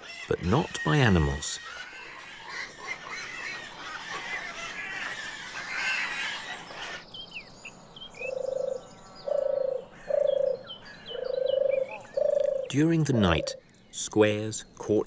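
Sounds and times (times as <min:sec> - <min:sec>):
chatter of animal calls: 0:00.0 - 0:07.0
frog croaking: 0:11.6 - 0:13.6.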